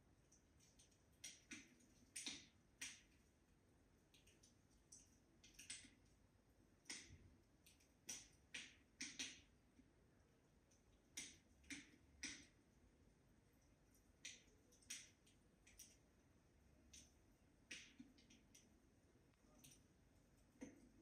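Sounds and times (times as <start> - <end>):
wood fire crackling and popping: 6.8 - 9.5, 14.2 - 16.0.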